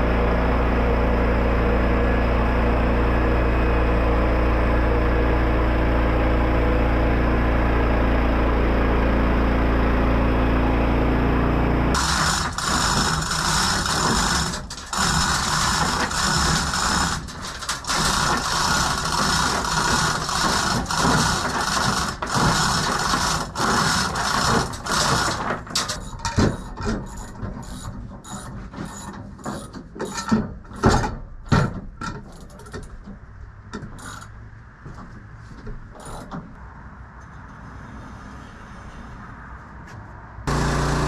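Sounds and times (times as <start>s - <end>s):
ratcheting mechanism clicking: 12.0s - 30.9s, 34.0s - 34.3s
metal clanks and knocks: 12.0s - 36.6s.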